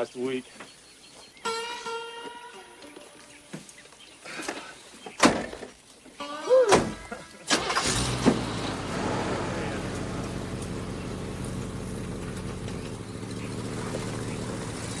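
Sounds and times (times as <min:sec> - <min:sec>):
car engine idling: 0:07.6 - 0:15.0.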